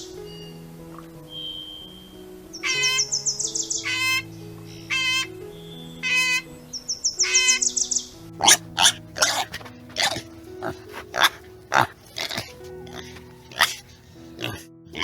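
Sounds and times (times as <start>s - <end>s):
background music with held notes: 0.0s - 15.0s
bird chirping and trilling: 1.3s - 15.0s
animal harsh grunts or squeals: 8.4s - 15.0s.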